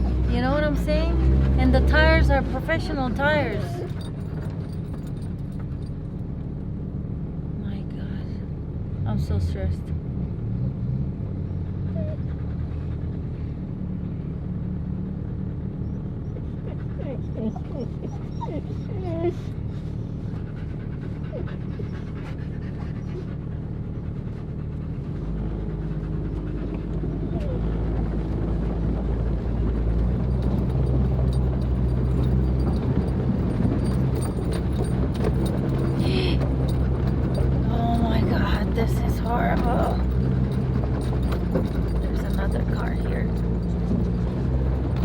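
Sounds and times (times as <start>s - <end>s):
light rattles and clicks: 0.0s - 6.5s, 28.6s - 45.0s
car engine rumble from cabin: 0.0s - 45.0s.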